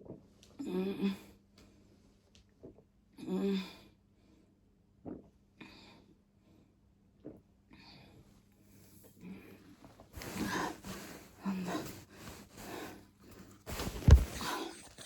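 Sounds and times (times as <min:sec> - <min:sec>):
woman breathing heavily: 0:10.2 - 0:15.0.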